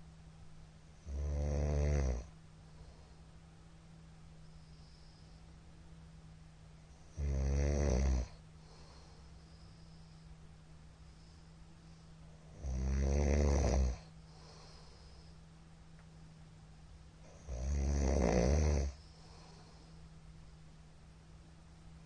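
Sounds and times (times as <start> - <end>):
faint breath hiss: 0.0 - 22.0
steady low hum: 0.0 - 22.0
man snoring loudly: 1.0 - 2.3, 7.2 - 8.4, 12.5 - 14.1, 17.3 - 19.0.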